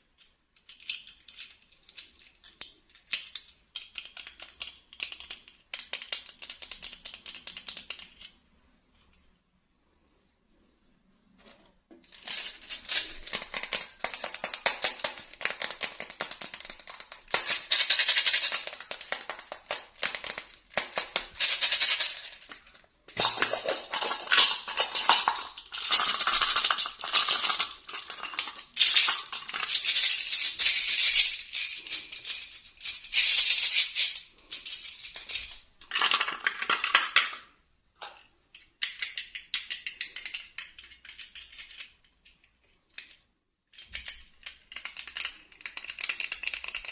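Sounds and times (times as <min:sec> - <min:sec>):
toy packaging crinkling and rattling: 0:12.0 - 0:37.4.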